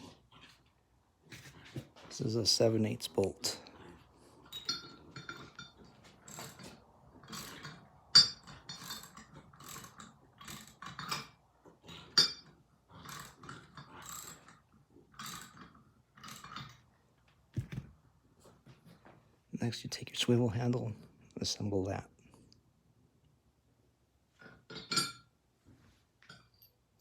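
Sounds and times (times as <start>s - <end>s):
wrench clicking and scraping on bolt: 4.4s - 16.9s.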